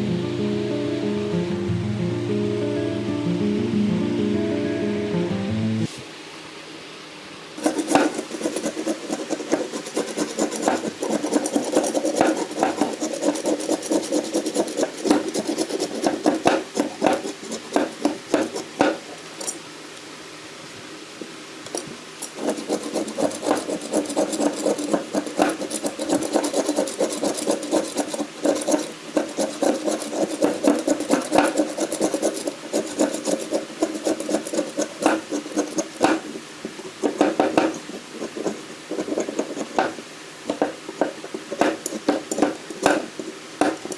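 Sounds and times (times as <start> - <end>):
hand tool scraping strokes: 7.6 - 19.6, 22.2 - 43.9.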